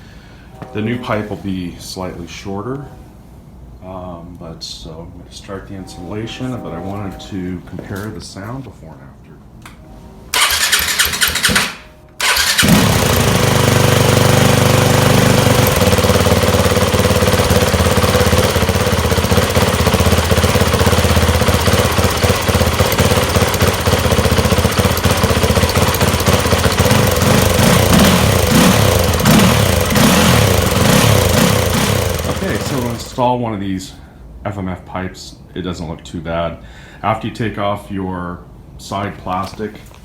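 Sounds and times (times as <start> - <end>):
dirt bike engine idling and revving: 10.4 - 33.2.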